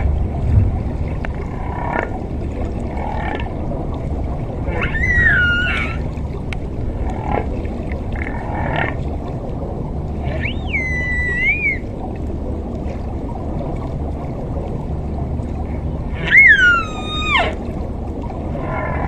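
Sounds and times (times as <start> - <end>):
low rumble: 0.0 - 19.0
animal high gliding call: 4.7 - 6.1, 10.2 - 11.9, 16.1 - 17.6.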